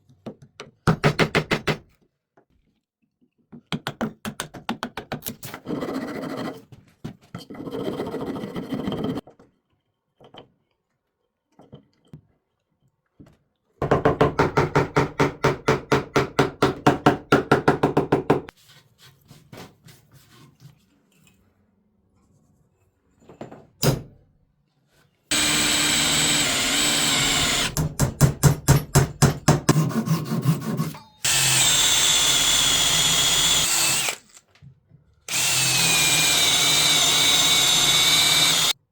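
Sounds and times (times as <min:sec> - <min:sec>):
drill-like whirring: 0:25.3 - 0:27.8, 0:31.2 - 0:34.4, 0:35.3 - 0:38.8.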